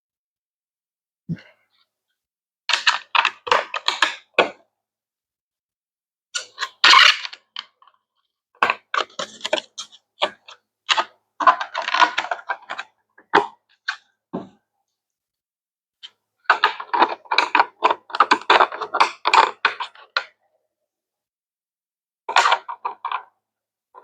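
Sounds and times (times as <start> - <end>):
plastic parts clicking and clattering: 2.7 - 4.6, 8.6 - 12.9, 16.5 - 20.3, 22.3 - 23.3.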